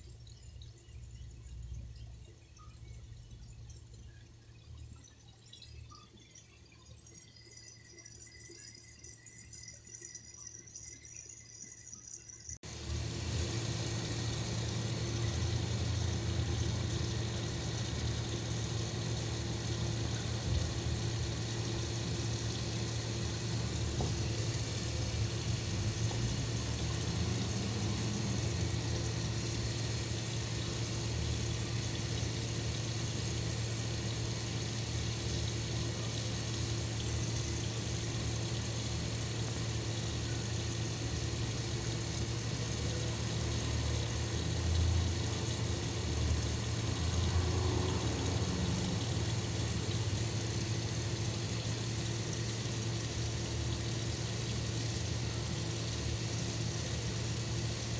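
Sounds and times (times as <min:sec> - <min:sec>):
water running: 0:07.3 - 0:57.9
steady low hum: 0:12.6 - 0:32.9.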